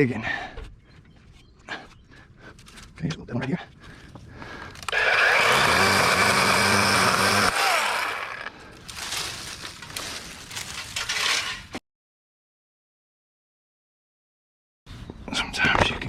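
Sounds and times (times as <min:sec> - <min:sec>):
chainsaw cutting branch: 0:04.8 - 0:11.2
scraping and rustling: 0:08.8 - 0:11.8.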